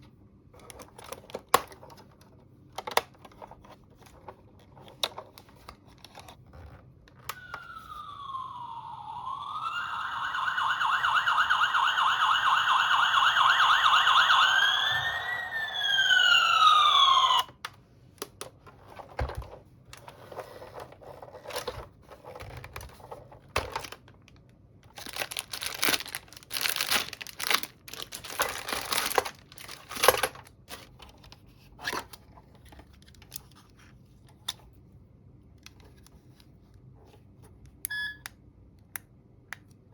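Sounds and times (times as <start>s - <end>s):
toy electronic siren: 7.3s - 17.6s
plastic packaging crinkling: 23.6s - 30.9s.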